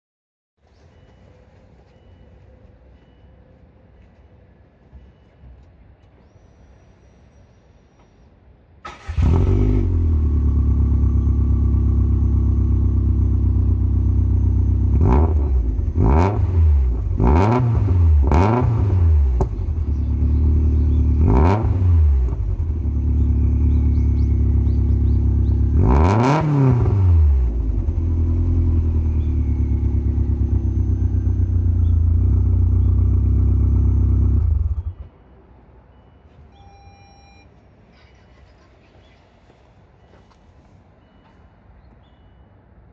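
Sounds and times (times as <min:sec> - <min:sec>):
car engine idling and revving: 0:08.9 - 0:35.2.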